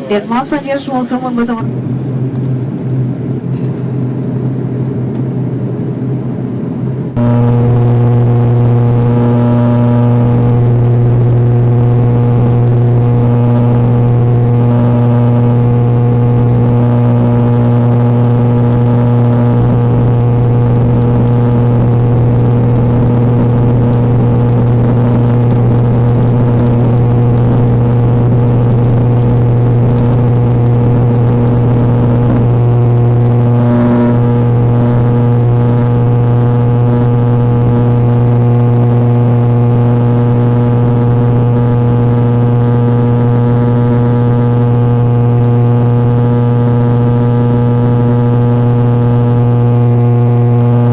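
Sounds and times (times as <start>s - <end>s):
propeller drone in cabin: 0.0s - 50.9s.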